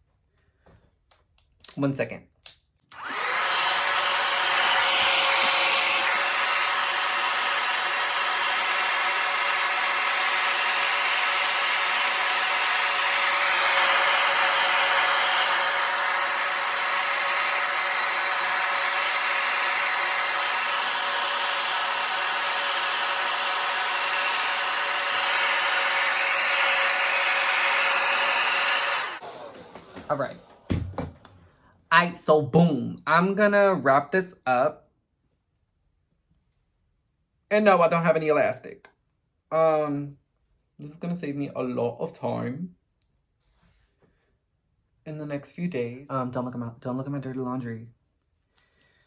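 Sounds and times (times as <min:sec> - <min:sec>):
hair dryer blowing: 0:02.9 - 0:32.0.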